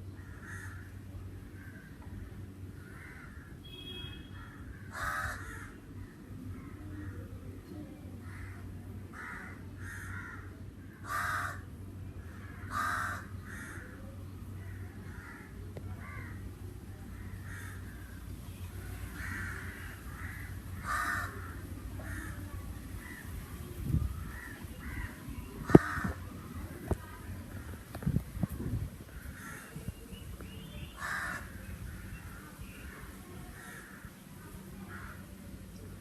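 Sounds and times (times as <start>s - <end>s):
crows cawing: 0.2s - 1.0s, 2.8s - 6.8s, 8.2s - 14.0s, 14.7s - 16.5s, 17.1s - 18.2s, 19.0s - 23.4s, 24.2s - 26.2s, 29.2s - 29.8s, 31.0s - 31.6s, 33.6s - 34.2s, 34.9s - 35.2s.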